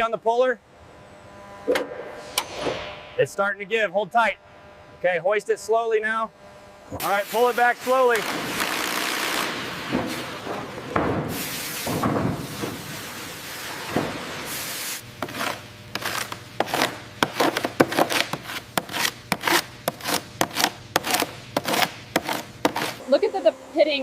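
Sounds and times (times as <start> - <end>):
rough scraping and rubbing: 15.2 - 23.0.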